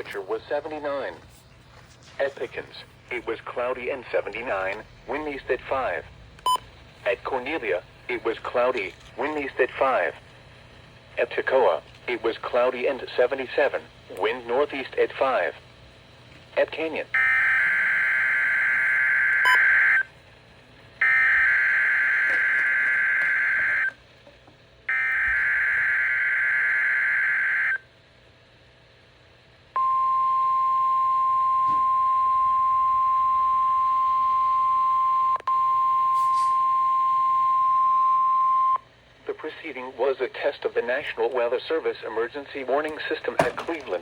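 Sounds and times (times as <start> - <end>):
steady warning alarm tone: 16.7 - 20.2, 21.0 - 24.0, 24.9 - 27.9, 29.8 - 38.9.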